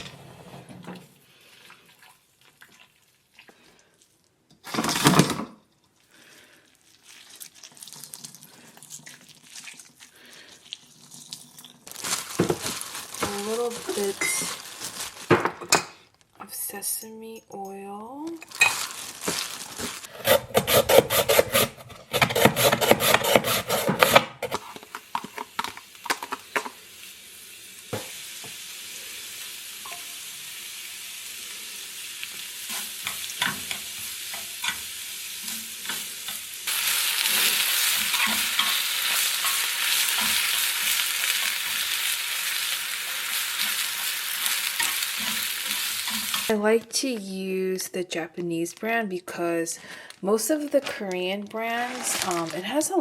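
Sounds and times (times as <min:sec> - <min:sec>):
food sizzling in a pan: 0:06.7 - 0:15.4, 0:24.7 - 0:46.6.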